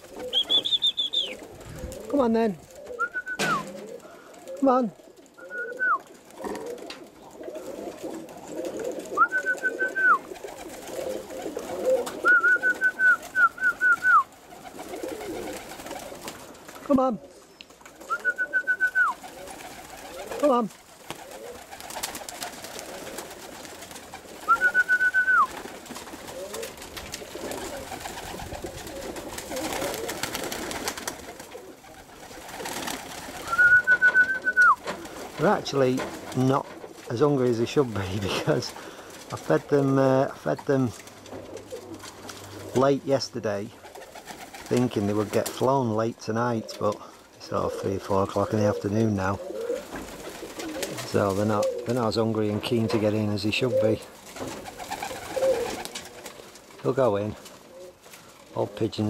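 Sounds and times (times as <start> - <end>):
pigeons cooing: 0.0 - 58.9
high whistled call: 0.3 - 1.4, 3.0 - 3.7, 5.4 - 6.0, 9.2 - 10.2, 12.2 - 14.3, 18.1 - 19.2, 24.5 - 25.5, 33.4 - 34.8.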